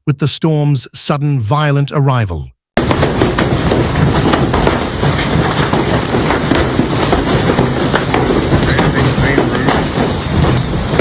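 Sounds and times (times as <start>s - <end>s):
hailstones pounding down: 2.8s - 11.0s.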